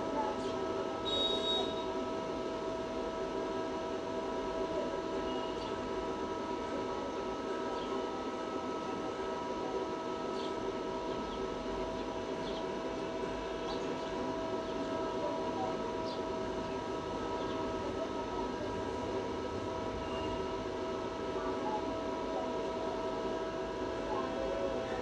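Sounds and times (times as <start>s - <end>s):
droning hum with whining tones: 0.0s - 25.0s.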